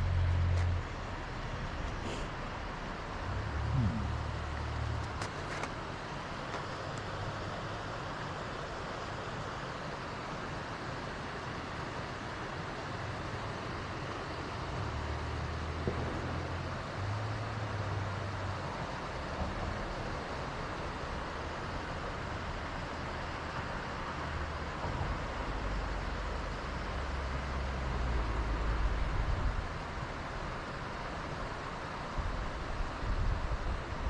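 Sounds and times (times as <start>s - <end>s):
mountain river rushing: 0.0s - 34.0s
wind rumbling on microphone: 3.2s - 5.4s.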